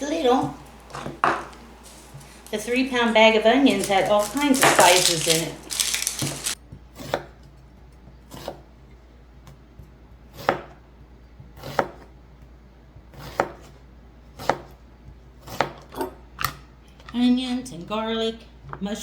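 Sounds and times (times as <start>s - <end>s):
knife chopping on cutting board: 0.4s - 2.6s, 3.6s - 7.4s, 10.3s - 10.8s, 11.6s - 12.1s, 13.1s - 13.7s, 14.4s - 14.8s, 15.4s - 16.2s.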